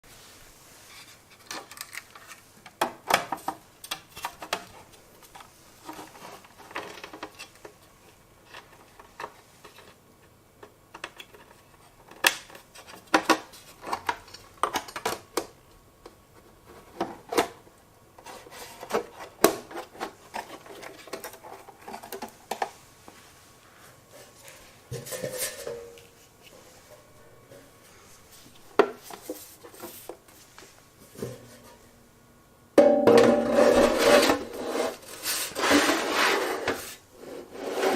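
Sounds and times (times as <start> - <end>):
faint background hum: 0.0 - 37.9
hard parts clattering: 32.8 - 34.6.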